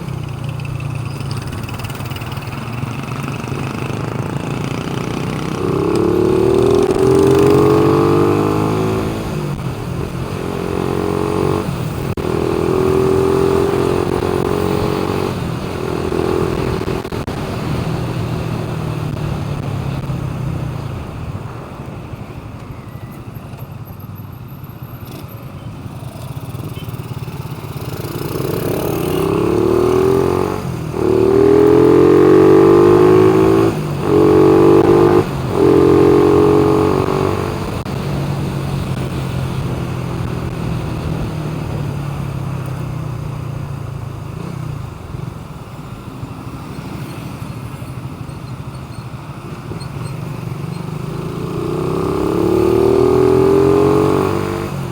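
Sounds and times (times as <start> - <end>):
vehicle engine revving: 3.4 - 20.3, 27.7 - 43.2, 50.7 - 54.9.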